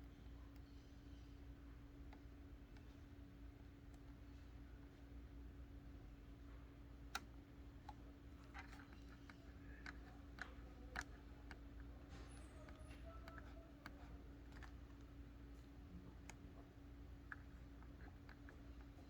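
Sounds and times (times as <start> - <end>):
printer low hum: 6.7 - 19.0
faint printer clicks: 7.0 - 19.0.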